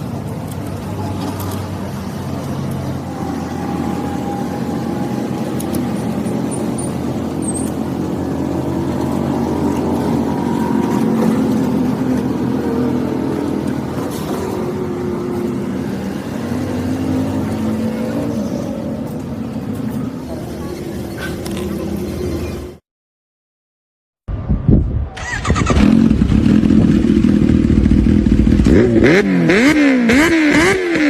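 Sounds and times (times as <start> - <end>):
motorcycle engine running: 25.7 - 31.0.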